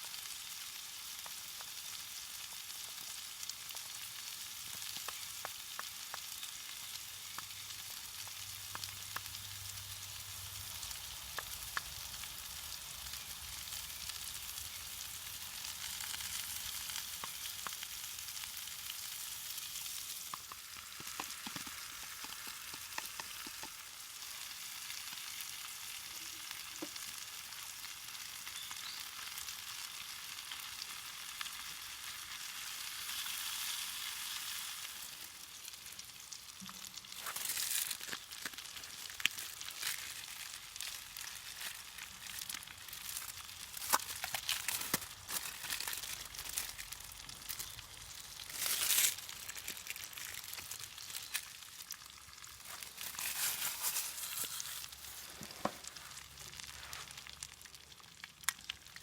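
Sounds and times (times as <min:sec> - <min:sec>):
crackles and pops: 0:00.0 - 0:59.0
food sizzling in a pan: 0:00.0 - 0:59.0.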